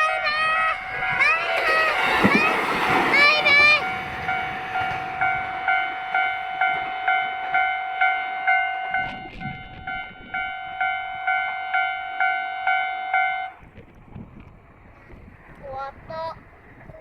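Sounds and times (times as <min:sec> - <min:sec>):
level crossing warning bell: 0:00.0 - 0:13.6.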